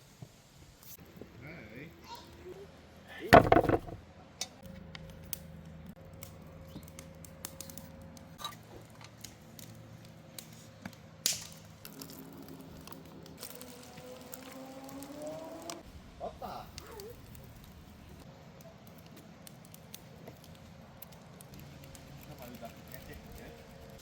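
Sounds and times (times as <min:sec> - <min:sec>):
wood fire crackling: 0:05.0 - 0:24.0.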